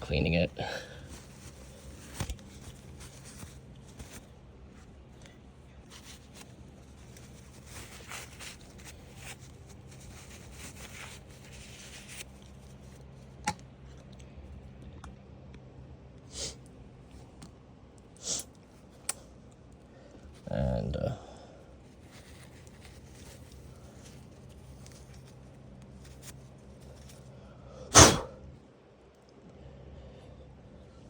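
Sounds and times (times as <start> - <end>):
tissue rustling and scraping parts: 0.1 - 13.3, 21.8 - 27.3.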